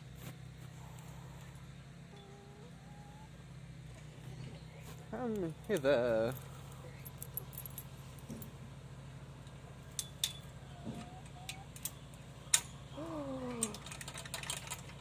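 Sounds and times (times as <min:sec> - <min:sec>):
steady low hum: 0:00.0 - 0:15.0
light clinks and clicks: 0:09.9 - 0:15.0.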